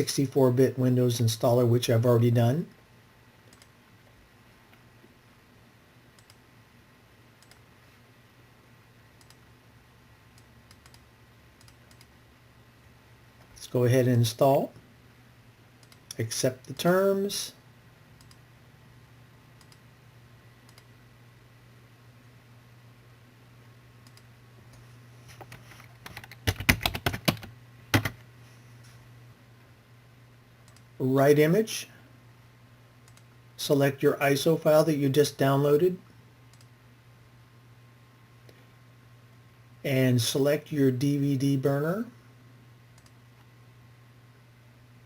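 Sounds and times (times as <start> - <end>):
faint steady hum: 0.0 - 45.0
computer mouse clicking: 3.4 - 3.8, 6.1 - 6.4, 7.4 - 7.7, 9.2 - 9.5, 10.3 - 12.2, 15.8 - 16.2, 18.2 - 18.4, 19.6 - 19.9, 20.6 - 20.9, 24.0 - 24.8, 25.4 - 28.2, 30.6 - 30.9, 33.0 - 33.3, 36.5 - 36.7, 42.9 - 43.5
computer keyboard keystrokes: 11.6 - 12.1, 25.4 - 28.2.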